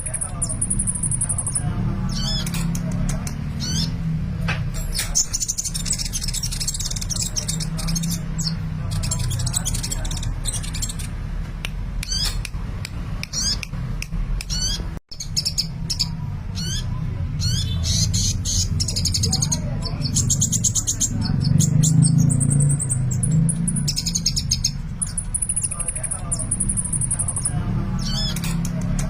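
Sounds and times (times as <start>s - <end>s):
bird chirping and trilling: 0.0s - 11.3s, 12.0s - 12.6s, 13.2s - 13.7s, 14.4s - 29.0s.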